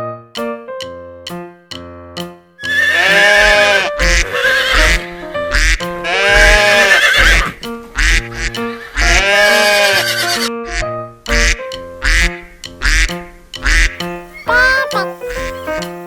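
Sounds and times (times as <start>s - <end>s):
simple keyboard tune: 0.0s - 6.7s, 10.4s - 16.0s
horse neighing: 2.6s - 5.1s, 6.1s - 7.6s, 8.8s - 10.5s.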